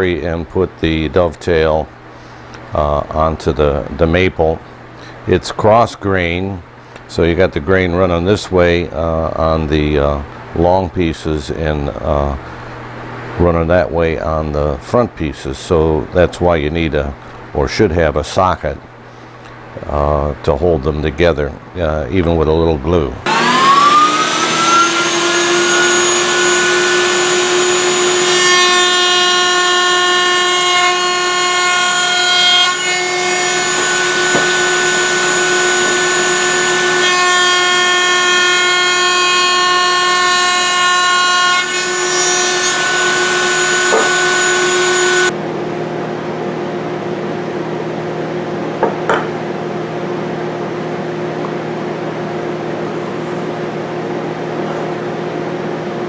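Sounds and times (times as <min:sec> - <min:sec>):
steady hum: 0:00.0 - 0:56.0
router cutting hardwood: 0:23.2 - 0:45.4
router whine: 0:23.2 - 0:45.4.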